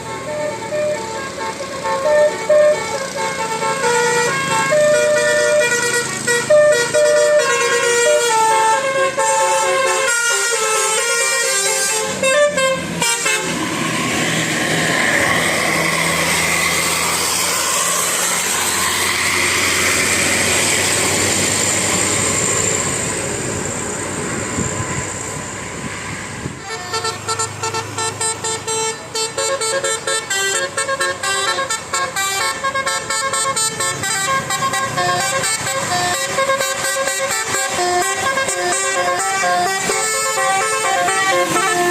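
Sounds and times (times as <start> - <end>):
bus musical horn: 0.0 - 14.4, 26.4 - 41.9
vehicle passing with engine hum: 0.0 - 41.9.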